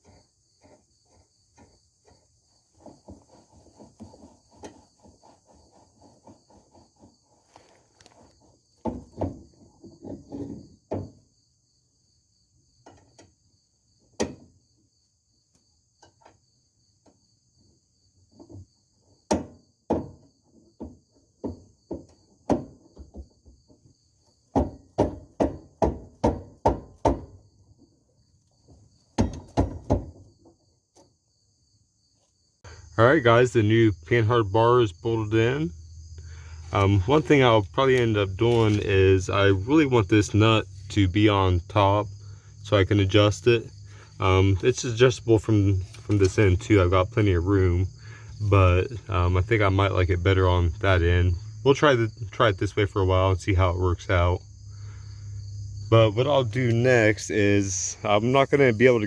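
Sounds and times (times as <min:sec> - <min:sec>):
crickets chirping: 0:00.0 - 0:59.0
sharp knocks on metal: 0:10.0 - 0:11.2, 0:19.3 - 0:23.3, 0:24.5 - 0:27.4, 0:29.2 - 0:30.3.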